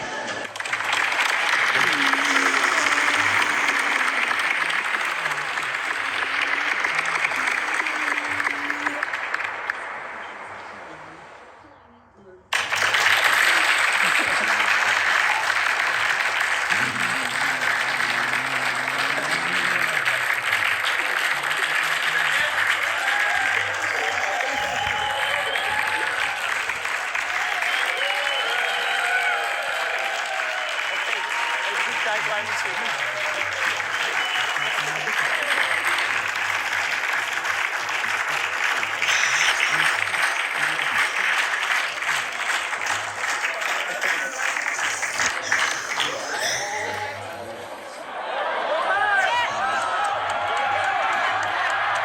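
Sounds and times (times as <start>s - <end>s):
crowd applause: 0.0s - 52.0s
faint low voice or tone: 1.6s - 9.4s, 10.2s - 12.5s, 13.5s - 26.9s, 31.2s - 36.6s, 37.8s - 42.4s, 43.5s - 48.0s.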